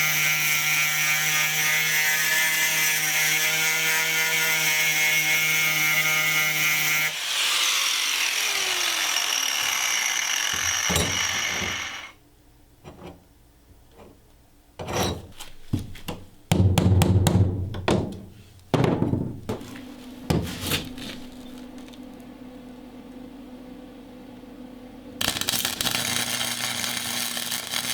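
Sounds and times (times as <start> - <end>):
power tool running: 7.0 - 12.2
loud irregular knocks and bangs: 15.8 - 19.6.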